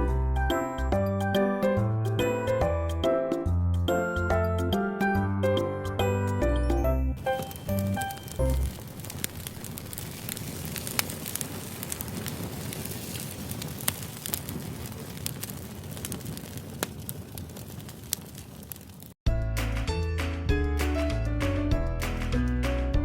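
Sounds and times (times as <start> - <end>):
wood fire crackling: 7.2 - 19.2.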